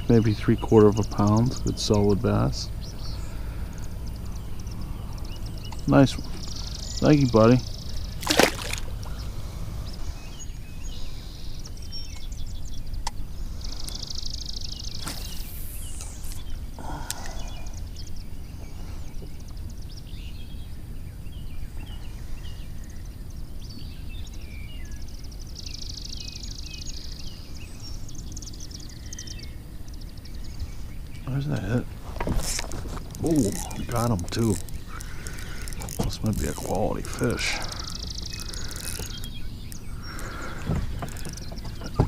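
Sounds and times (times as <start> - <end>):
birds chirping: 0.0 - 42.0
sharp clicks: 33.0 - 41.6.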